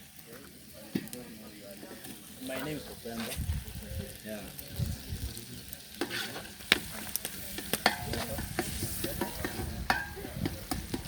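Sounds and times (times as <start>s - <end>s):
food sizzling: 0.0s - 11.0s
utensil scraping a pot: 6.0s - 11.0s.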